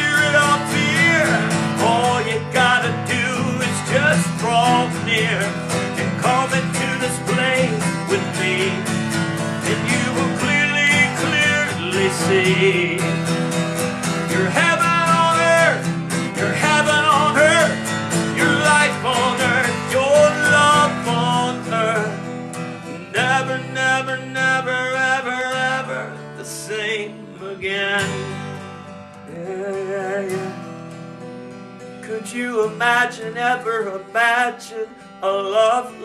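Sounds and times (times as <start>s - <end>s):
strummed acoustic guitar: 0.0s - 36.0s.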